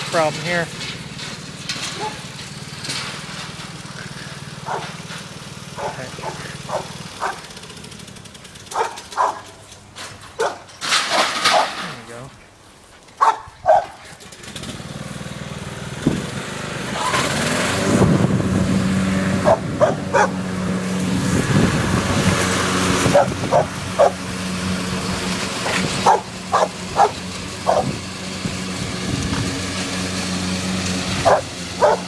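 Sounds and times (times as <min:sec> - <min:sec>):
lawn mower engine running: 0:00.0 - 0:32.0
dog barking: 0:02.0 - 0:02.2, 0:04.6 - 0:05.0, 0:05.8 - 0:07.5, 0:08.7 - 0:09.6, 0:10.4 - 0:10.7, 0:13.2 - 0:14.0, 0:19.4 - 0:20.4, 0:23.1 - 0:24.2, 0:26.0 - 0:28.0, 0:31.2 - 0:32.0.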